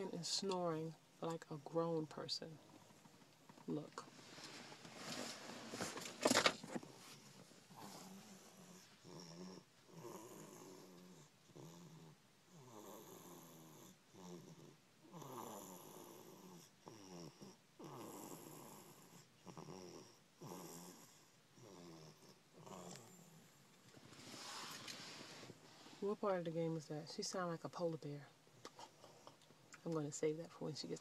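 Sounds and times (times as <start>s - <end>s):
baby snoring: 6.8s - 23.5s.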